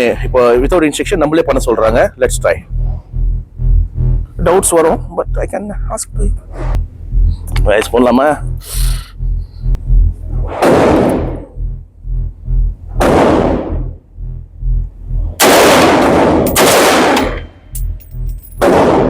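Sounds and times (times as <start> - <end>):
background music with steady beat: 0.0 - 10.5
gunshots: 10.5 - 11.5, 13.0 - 13.8, 15.4 - 17.5, 18.6 - 19.0.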